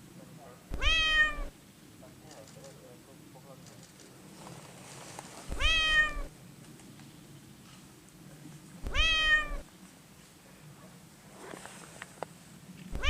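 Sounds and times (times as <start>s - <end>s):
cat meowing: 0.7s - 1.5s, 5.5s - 6.3s, 8.8s - 9.7s.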